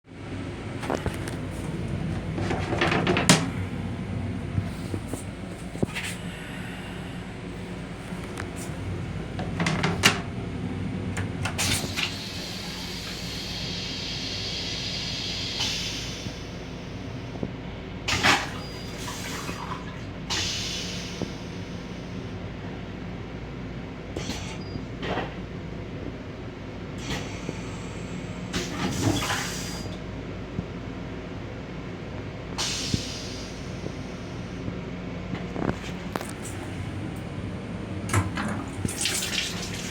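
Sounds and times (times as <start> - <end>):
electric railcar hum: 0.1 - 19.2, 29.5 - 39.7
electric train low rumble: 0.1 - 39.9
clicks and rattling knocks: 2.1 - 3.5, 9.4 - 10.3.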